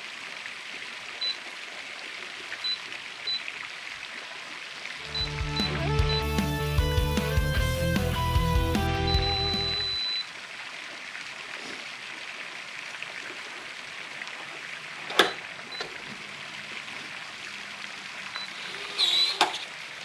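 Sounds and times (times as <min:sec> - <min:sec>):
warbling electronic chirp: 0:05.1 - 0:10.1
short high beeps: 0:05.1 - 0:10.3.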